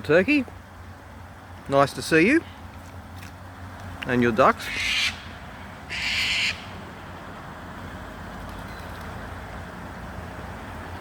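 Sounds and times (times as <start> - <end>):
duck harsh hissy call: 5.9 - 6.6.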